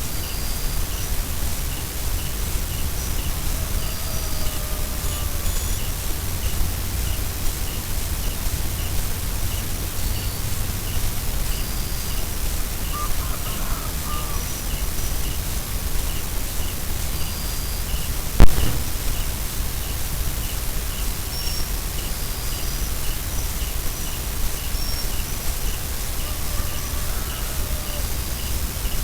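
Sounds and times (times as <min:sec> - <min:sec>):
bird-like calls: 0:02.2 - 0:06.6, 0:12.8 - 0:15.0
sharp knock: 0:18.4 - 0:19.1
low rumbling noise: 0:18.4 - 0:19.6.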